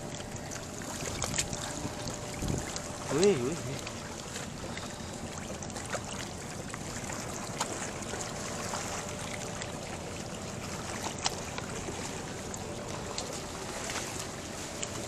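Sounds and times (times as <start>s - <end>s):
moving water: 0.0s - 15.0s
wind: 0.0s - 15.0s.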